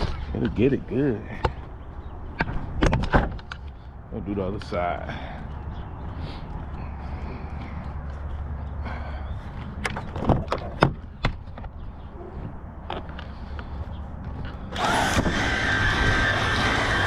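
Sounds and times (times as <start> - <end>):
loud steady whining: 14.7 - 17.0.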